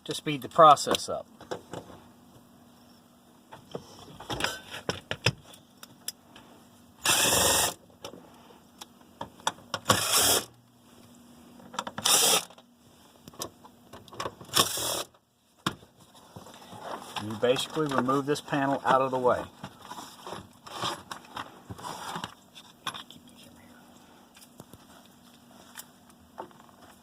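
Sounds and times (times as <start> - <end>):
power driver whirring: 7.0 - 7.8, 9.8 - 10.6, 12.0 - 12.6, 14.5 - 15.1.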